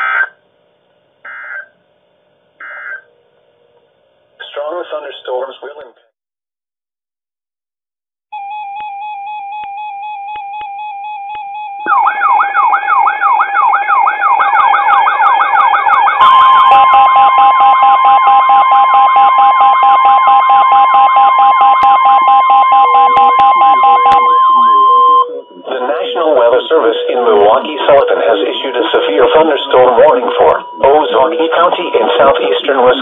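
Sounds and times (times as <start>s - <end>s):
steady alert tone: 8.4s - 14.0s, 16.0s - 33.0s
warbling electronic tone: 8.4s - 33.0s.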